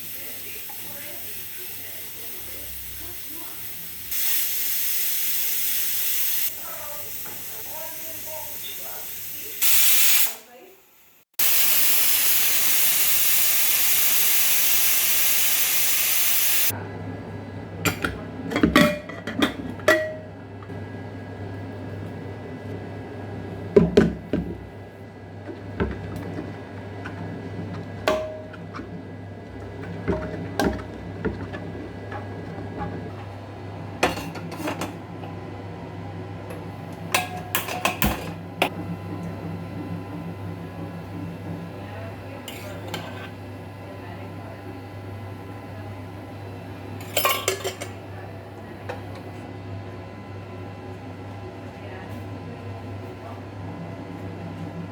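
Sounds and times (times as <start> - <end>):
loud even hiss: 8.5 - 16.7
metal utensils and pots clinking: 17.8 - 20.2, 34.0 - 35.0, 37.1 - 38.4, 42.4 - 43.4, 47.0 - 48.0.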